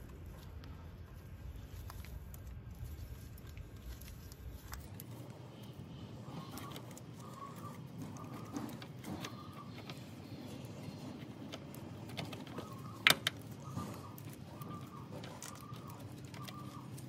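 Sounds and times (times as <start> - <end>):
faint bird call: 5.5 - 11.2, 12.3 - 17.0.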